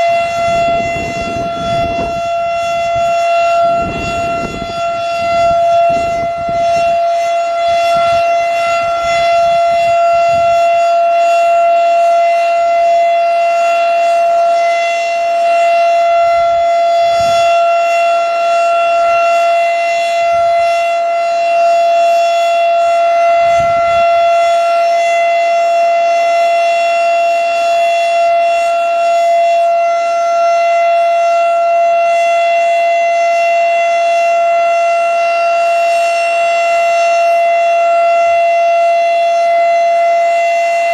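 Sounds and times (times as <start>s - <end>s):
wind buffeting microphone: 0.0s - 13.1s, 15.5s - 20.8s, 23.0s - 24.6s
warning siren steady tone: 0.0s - 40.9s.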